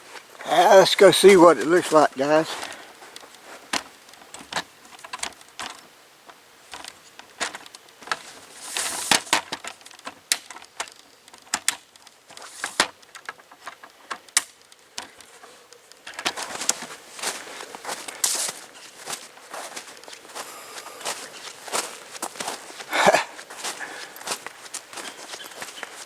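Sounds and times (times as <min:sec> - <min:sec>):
footsteps crunching on icy snow: 0:00.0 - 0:03.9, 0:15.1 - 0:26.0.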